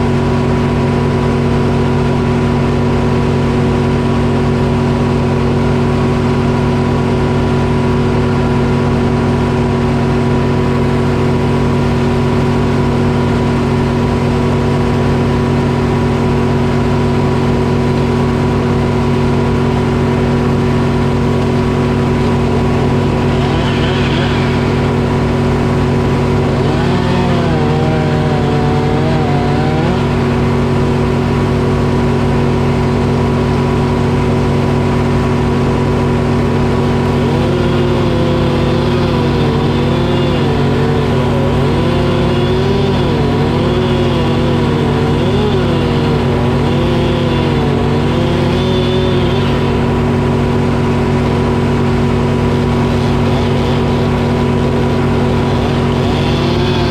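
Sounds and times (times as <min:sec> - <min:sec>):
diesel engine running steadily: 0:00.0 - 0:56.9
wavering whine: 0:11.1 - 0:56.9.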